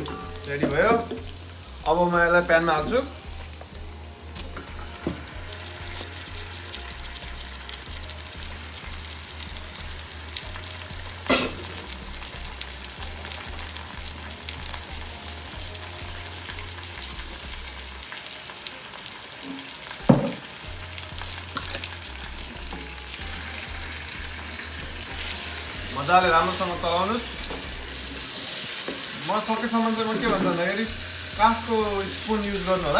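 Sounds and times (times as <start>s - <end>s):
chicken sizzling in a pan: 0.0s - 32.9s
spoon knocking against pan: 20.0s - 21.9s.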